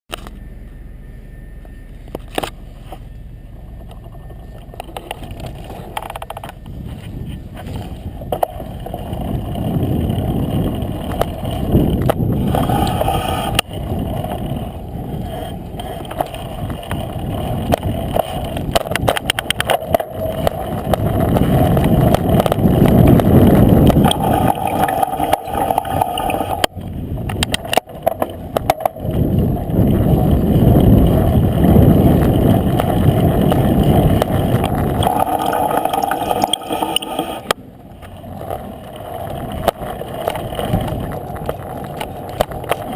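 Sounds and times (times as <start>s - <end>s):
bicycle rolling: 1.9s - 42.9s
rapid ticking: 8.3s - 42.9s.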